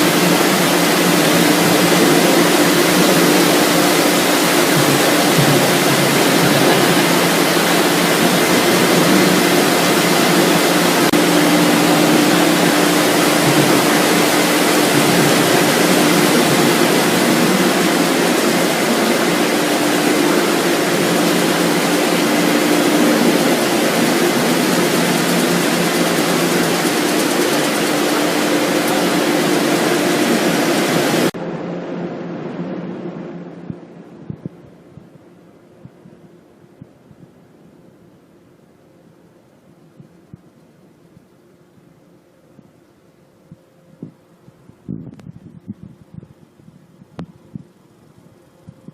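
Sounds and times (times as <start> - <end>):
production line machinery running: 0.0 - 31.4
constant machine hum: 0.0 - 48.9
faint high whine: 0.0 - 48.9.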